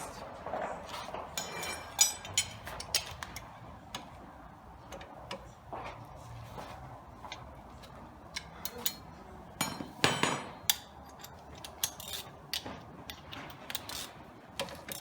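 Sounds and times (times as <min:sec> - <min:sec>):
metal tools clinking: 0:01.3 - 0:03.5, 0:08.3 - 0:12.3
ringing metal clank: 0:01.4 - 0:02.4, 0:09.6 - 0:10.8.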